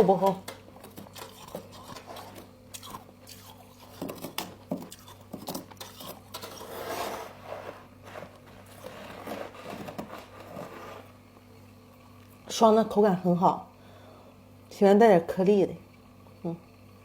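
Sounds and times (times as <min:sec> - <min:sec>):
chewing crunchy frost: 0:00.6 - 0:11.2.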